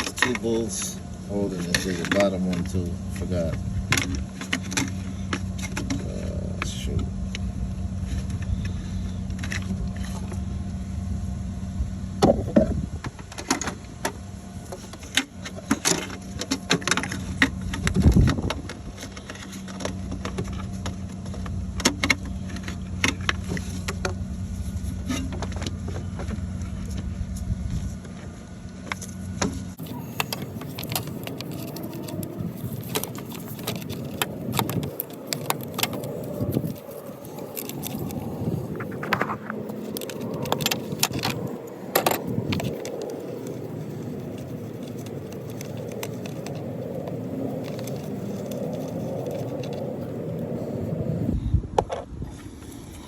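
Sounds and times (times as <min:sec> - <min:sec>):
steady low hum: 0:00.0 - 0:53.0
sharp clicks and knocks: 0:28.0 - 0:43.6.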